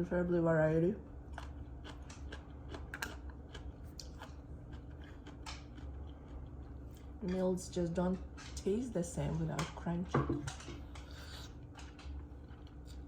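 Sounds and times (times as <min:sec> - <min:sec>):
faint low hum: 0:00.0 - 0:13.0
person chewing crisp vegetables: 0:01.1 - 0:07.2, 0:10.8 - 0:13.0.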